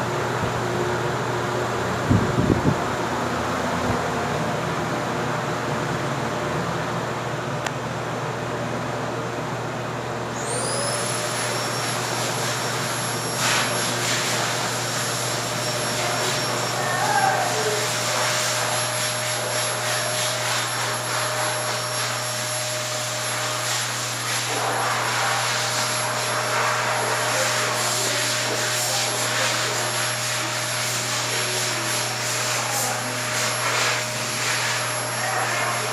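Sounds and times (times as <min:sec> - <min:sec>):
electric fan running: 0:00.0 - 0:35.9.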